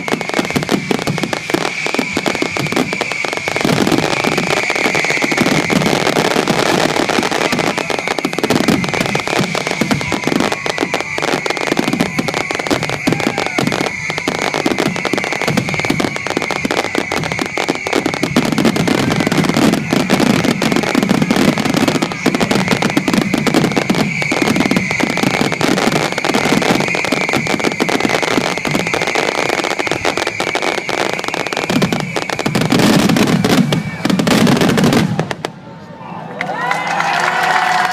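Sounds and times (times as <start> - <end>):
fireworks bursting and crackling: 0.0 - 35.9.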